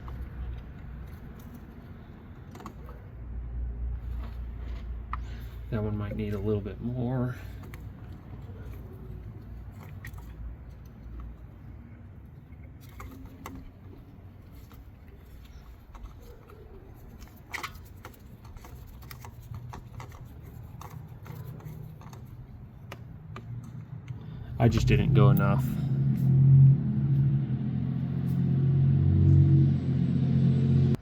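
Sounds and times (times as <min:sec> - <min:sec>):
hand tools clicking and scraping: 0:00.0 - 0:26.4.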